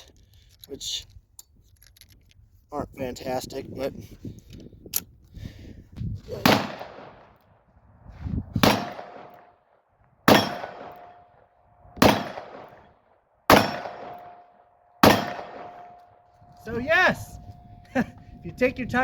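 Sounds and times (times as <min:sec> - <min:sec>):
revolver gunshots: 0:06.4 - 0:07.4, 0:08.6 - 0:09.6, 0:10.3 - 0:11.2, 0:12.0 - 0:16.0
steel target ringing: 0:10.3 - 0:11.2, 0:13.5 - 0:14.4, 0:15.0 - 0:17.8.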